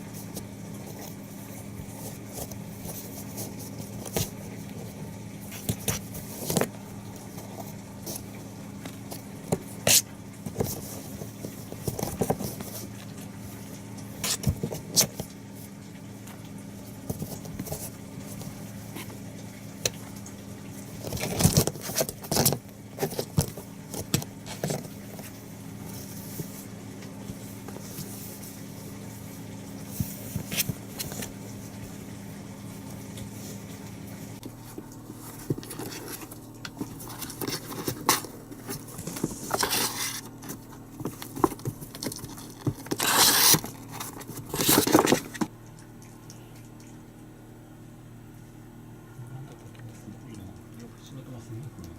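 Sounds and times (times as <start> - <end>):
steady low hum: 0.0 - 51.9
kittens tapping and scraping: 0.1 - 15.7, 16.9 - 19.2, 20.8 - 28.6, 29.8 - 31.5, 34.4 - 45.5.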